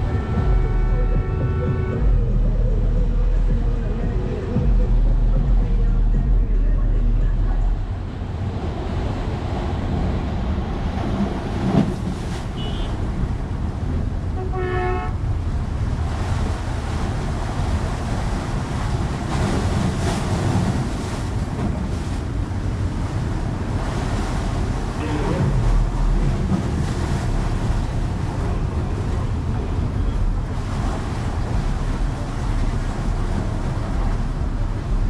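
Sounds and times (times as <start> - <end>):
wind buffeting microphone: 0.0 - 35.0
sea water washing: 7.5 - 35.0.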